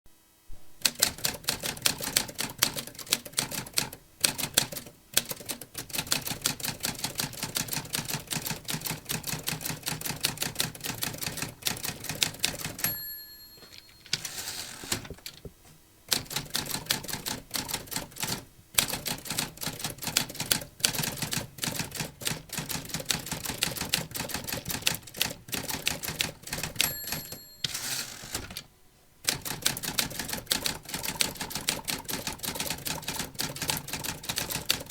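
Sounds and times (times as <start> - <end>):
typewriter bell ding: 12.6 - 14.8, 26.7 - 28.6
typewriter carriage sliding rasp: 14.1 - 15.4, 27.6 - 28.7.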